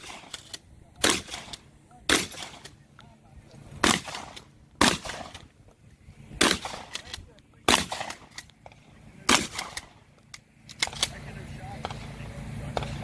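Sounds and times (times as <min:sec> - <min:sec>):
rifle shots: 0:00.0 - 0:02.8, 0:03.7 - 0:05.6, 0:06.3 - 0:10.1, 0:10.7 - 0:11.2.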